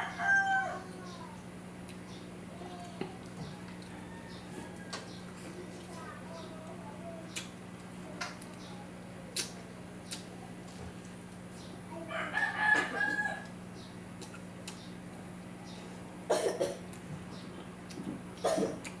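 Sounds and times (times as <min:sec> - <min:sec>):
rooster crowing: 0:00.0 - 0:01.0, 0:03.4 - 0:05.1, 0:12.1 - 0:13.5.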